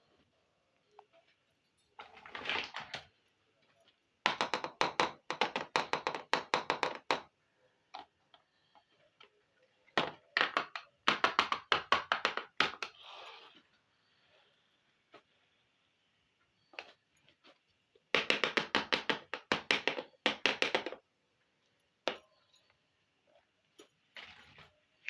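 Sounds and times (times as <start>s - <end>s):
soft rustle: 23.3s - 25.0s.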